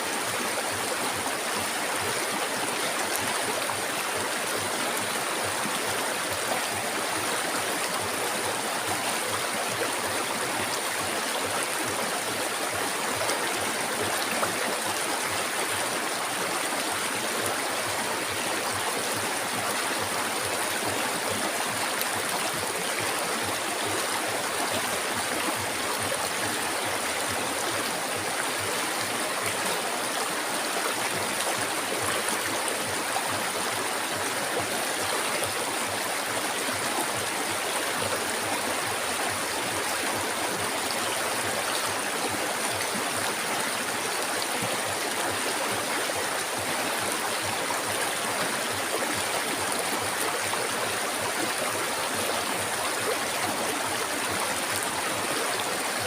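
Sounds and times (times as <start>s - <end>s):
river water flowing: 0.0s - 56.0s.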